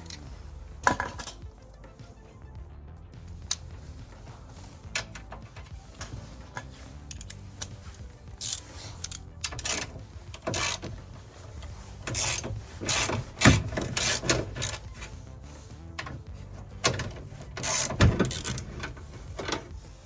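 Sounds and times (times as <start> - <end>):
socket ratchet clicking: 7.0 - 11.1, 12.0 - 14.9, 16.0 - 19.8.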